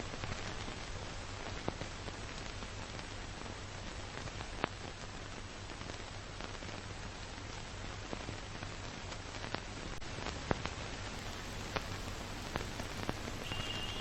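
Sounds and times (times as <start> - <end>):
rain hiss: 0.0 - 14.0
sharp drip ticks: 11.2 - 14.0.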